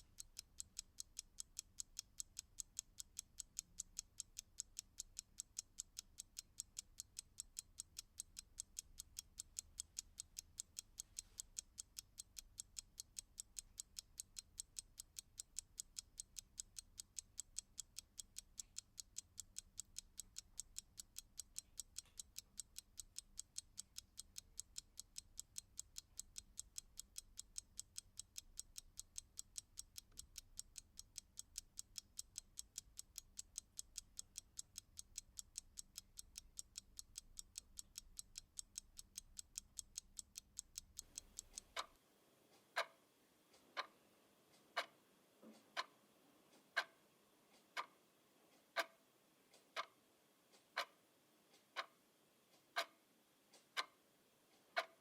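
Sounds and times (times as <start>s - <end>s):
clock ticking: 0.0s - 55.0s.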